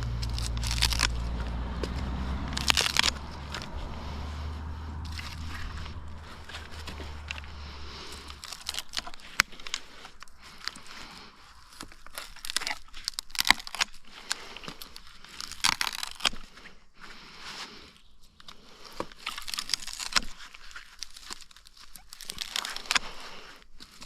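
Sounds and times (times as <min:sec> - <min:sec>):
low motor hum: 0:00.0 - 0:12.0
dry branches snapping and crunching: 0:00.0 - 0:16.6, 0:18.4 - 0:24.0.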